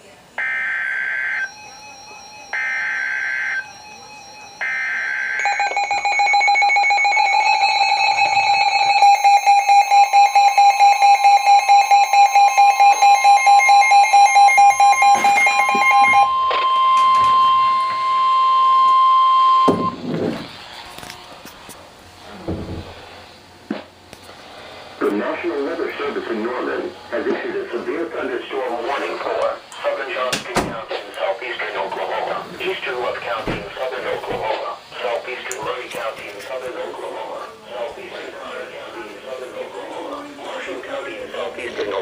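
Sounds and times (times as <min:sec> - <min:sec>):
screeching digital header data: 0:00.4 - 0:20.0
steady high tone: 0:00.4 - 0:20.0
harsh pulsing alarm tone: 0:00.4 - 0:20.1.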